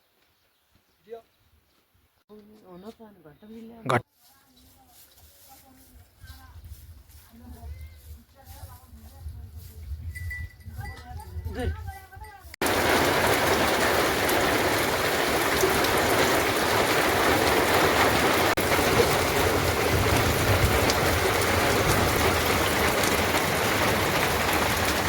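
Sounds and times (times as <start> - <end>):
heavy rain falling: 12.6 - 25.0.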